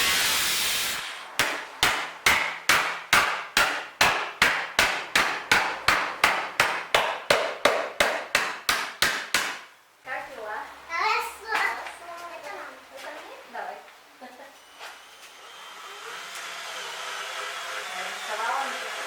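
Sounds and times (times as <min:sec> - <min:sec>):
hammer striking metal: 0:01.4 - 0:09.6.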